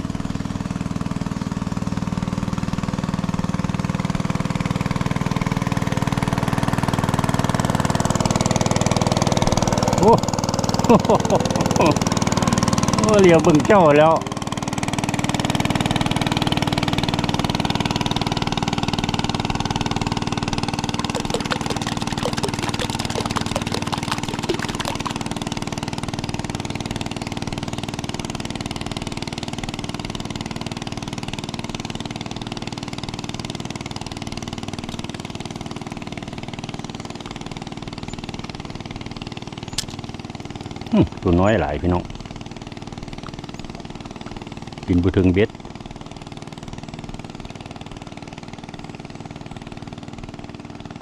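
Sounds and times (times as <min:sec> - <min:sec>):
boat engine running: 0:18.7 - 0:25.4.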